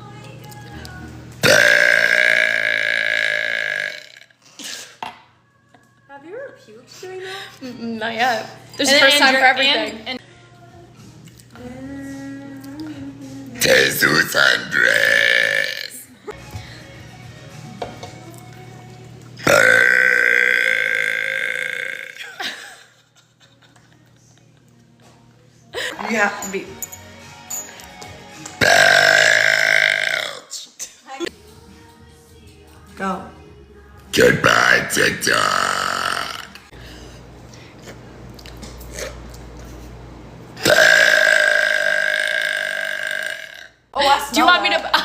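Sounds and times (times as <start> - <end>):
person burping: 1.4 - 5.0, 13.6 - 16.1, 19.4 - 22.4, 28.6 - 30.6, 34.2 - 36.7, 40.6 - 43.8.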